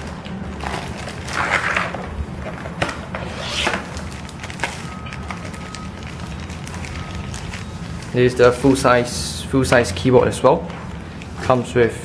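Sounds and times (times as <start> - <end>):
packaging rustling: 0.0 - 9.1.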